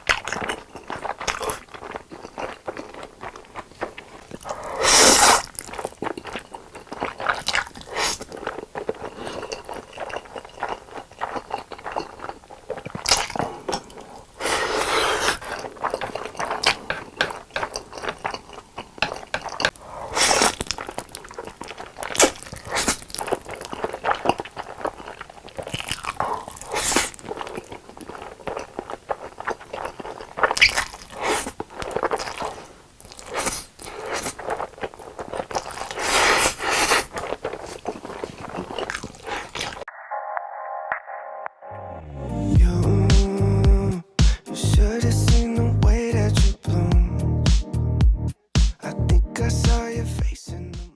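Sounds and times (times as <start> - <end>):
person chewing noodles: 0.0 - 39.9.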